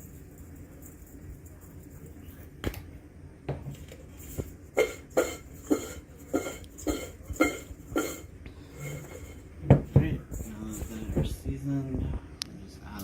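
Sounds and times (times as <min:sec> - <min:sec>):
fries shaken in steel bowl: 0:04.1 - 0:09.4.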